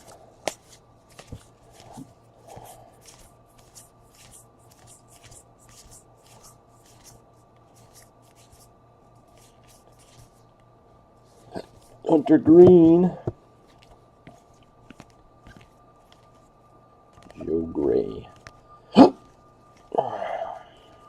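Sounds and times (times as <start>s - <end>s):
cards flicking and sliding: 0.0s - 8.7s
low steady hum: 0.0s - 21.0s.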